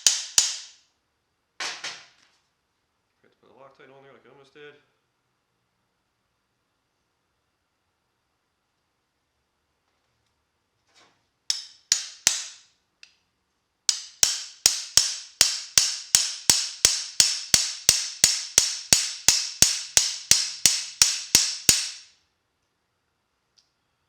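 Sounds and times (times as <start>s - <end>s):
hammer striking metal: 0.0s - 0.8s, 11.5s - 12.6s, 13.9s - 22.1s.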